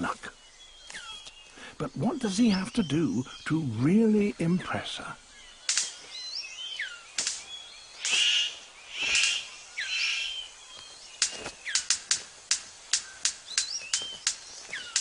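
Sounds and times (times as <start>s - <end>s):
harsh rasping bird calls: 0.0s - 15.0s
sharp bird clicks: 0.7s - 1.6s, 5.5s - 15.0s.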